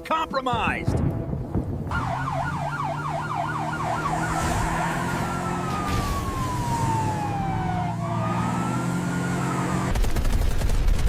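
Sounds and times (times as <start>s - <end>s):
emergency siren yelp and wail: 1.9s - 9.9s.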